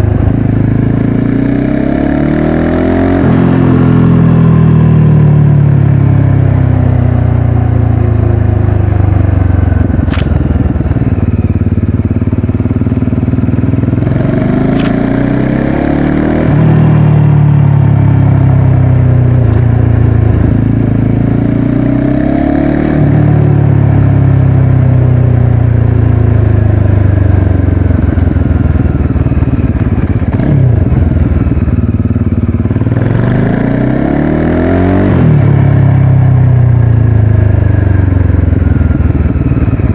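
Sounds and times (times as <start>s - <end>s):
motorcycle engine revving: 5.8s - 25.2s, 26.6s - 39.9s
short clicks: 10.0s - 10.6s, 14.7s - 15.0s.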